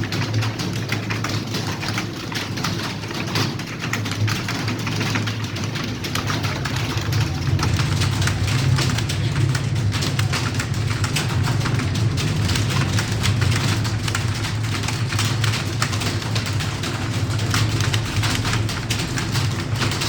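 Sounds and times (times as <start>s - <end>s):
many keyboards typing: 0.0s - 20.0s
steady low hum: 6.0s - 20.0s.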